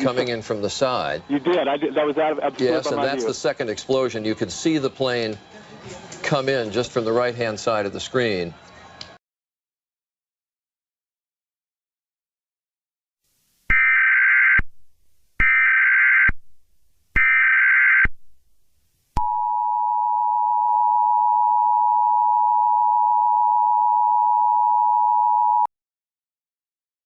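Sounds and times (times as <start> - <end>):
data burst tones: 13.7 - 14.7.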